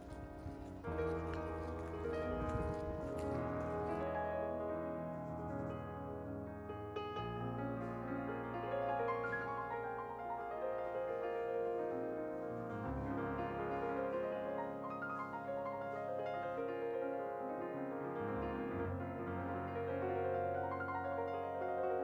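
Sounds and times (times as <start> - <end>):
piano background music: 0.0 - 22.0.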